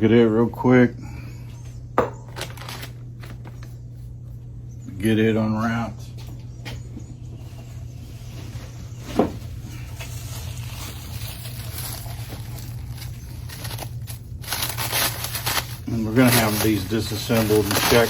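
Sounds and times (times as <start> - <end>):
steady low hum: 0.0 - 18.0
packing material rustling: 2.4 - 3.7, 9.6 - 18.0.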